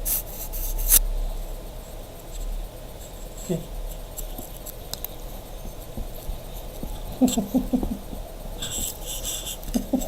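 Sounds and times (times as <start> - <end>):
brief hiss: 0.0 - 1.1.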